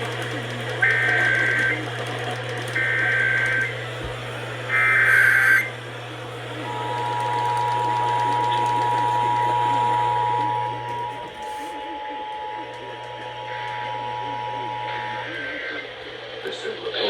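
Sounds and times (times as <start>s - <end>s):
buzzy data bursts: 0.0s - 16.3s
low broadcast hum: 2.7s - 17.0s
two-tone alert signal: 4.7s - 5.7s.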